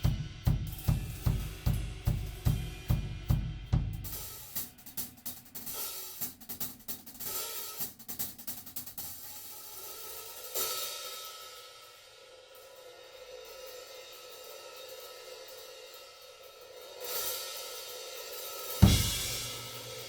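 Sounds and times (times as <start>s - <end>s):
hi-hat and cymbal strokes: 0.0s - 20.0s
cymbal crash ringing: 18.8s - 20.0s
heavy low drum hits: 18.8s - 20.0s.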